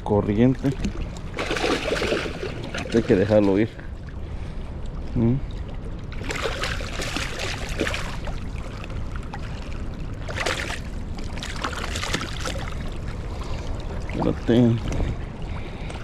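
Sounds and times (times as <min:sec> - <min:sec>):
splashing water: 0:00.0 - 0:04.0, 0:06.1 - 0:16.0.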